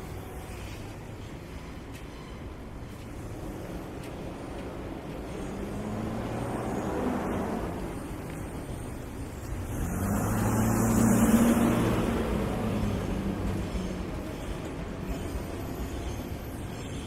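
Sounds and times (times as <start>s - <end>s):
vehicles passing on street: 0.0s - 17.0s.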